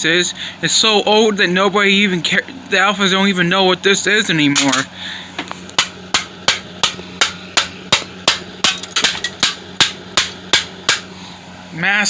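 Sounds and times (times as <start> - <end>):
hand tool striking floppy disk: 4.6 - 4.9, 5.7 - 11.1.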